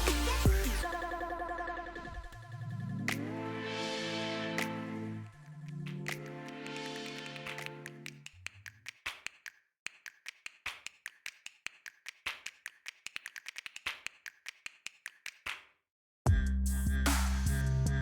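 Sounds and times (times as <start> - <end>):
loud music with heavy bass: 0.0 - 7.5, 16.3 - 18.0
sharp clicks and taps: 5.7 - 15.6.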